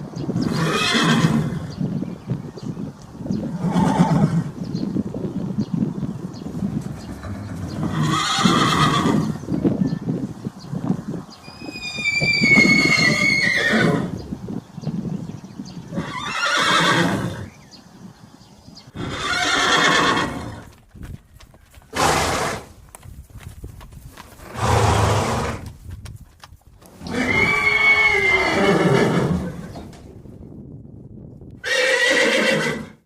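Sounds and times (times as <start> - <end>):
horse whinnying: 0.4 - 1.7, 3.5 - 4.6, 7.2 - 9.4, 11.4 - 14.2, 15.9 - 17.5, 18.9 - 20.7, 21.9 - 22.7, 24.5 - 25.6, 26.9 - 29.9, 31.6 - 33.0.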